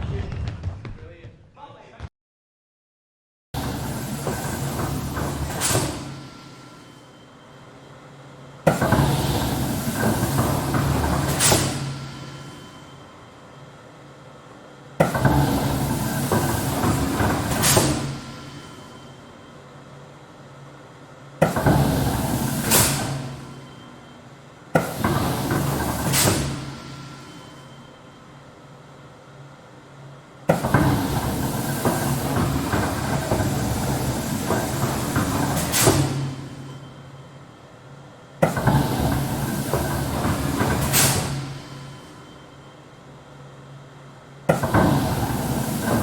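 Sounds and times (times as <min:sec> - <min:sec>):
machine hiss: 0:03.6 - 0:08.1, 0:08.7 - 0:13.8, 0:15.1 - 0:19.6, 0:21.4 - 0:28.4, 0:30.5 - 0:37.2, 0:38.5 - 0:42.6, 0:44.6 - 0:46.0
machinery humming: 0:03.6 - 0:46.0
stamp hit with mechanical clatter: 0:24.8 - 0:26.8.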